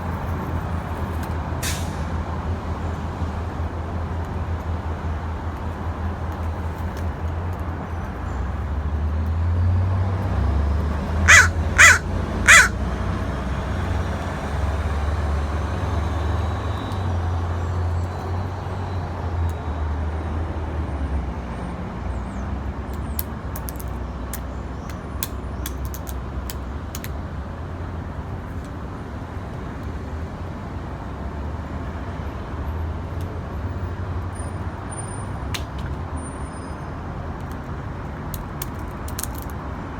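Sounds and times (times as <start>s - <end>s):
crow cawing: 11.2s - 12.9s.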